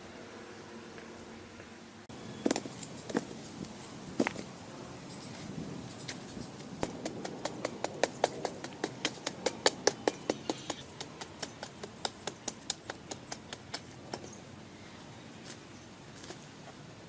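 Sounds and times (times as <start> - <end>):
rapid light sharp taps: 6.6 - 14.3.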